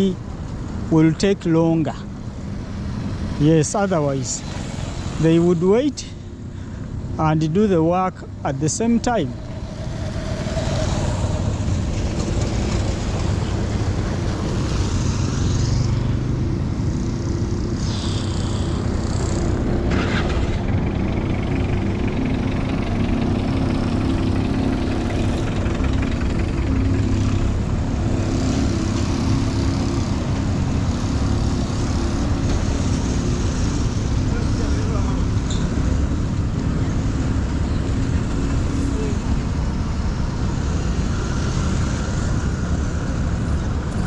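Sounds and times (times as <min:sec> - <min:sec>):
road noise: 0:00.0 - 0:44.0
vehicle engine humming: 0:00.0 - 0:44.0
brief high hissing: 0:17.8 - 0:18.8.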